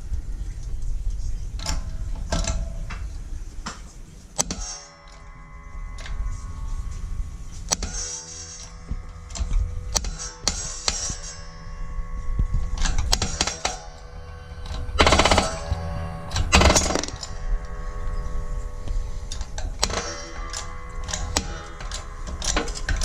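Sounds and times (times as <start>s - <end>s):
metal clicks and clanks: 1.6s - 5.2s, 19.3s - 23.0s
hydraulic press humming: 1.6s - 23.0s
harsh grinding of bearings: 14.6s - 17.8s.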